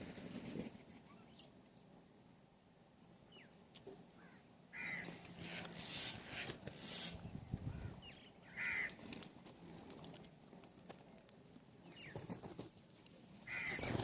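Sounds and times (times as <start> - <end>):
faint bird chirps: 0.8 - 2.0, 3.1 - 8.9, 11.8 - 12.4
birds calling: 3.3 - 9.1, 13.4 - 14.0.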